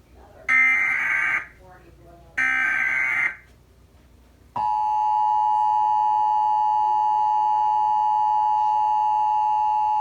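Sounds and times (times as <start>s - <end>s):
two-tone alarm signal: 0.5s - 1.5s, 2.4s - 3.5s, 4.6s - 10.0s.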